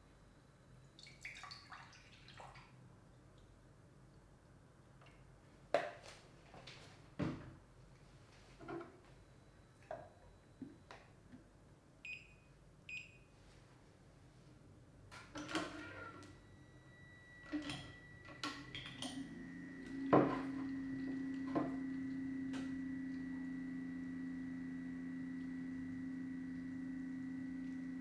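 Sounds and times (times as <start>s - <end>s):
milk frother motor humming: 17.0s - 28.0s.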